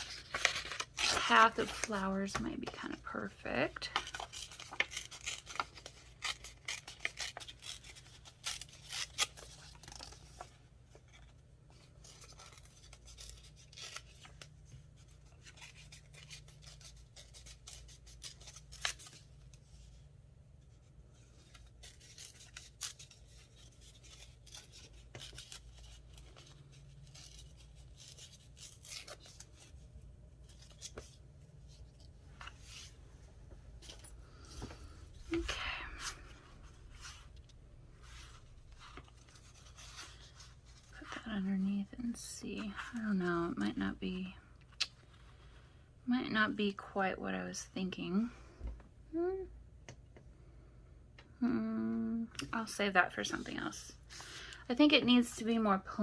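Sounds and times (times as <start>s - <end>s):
scissors snipping paper: 3.9s - 10.2s.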